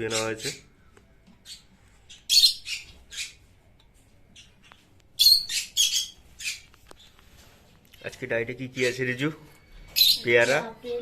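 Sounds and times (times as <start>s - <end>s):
parrots squawking: 0.0s - 0.8s, 1.4s - 3.6s, 4.4s - 6.8s, 8.7s - 11.0s.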